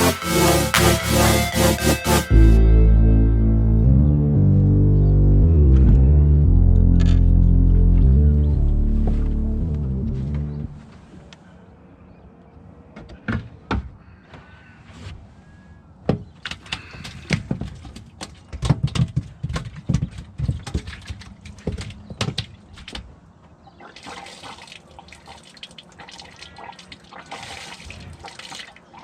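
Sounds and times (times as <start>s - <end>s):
water splashing and sloshing: 19.6s - 29.0s.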